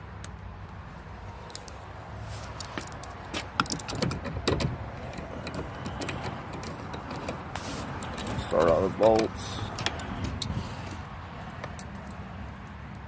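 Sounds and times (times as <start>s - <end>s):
clicks and clinks of bolts: 2.6s - 7.4s, 8.0s - 10.6s.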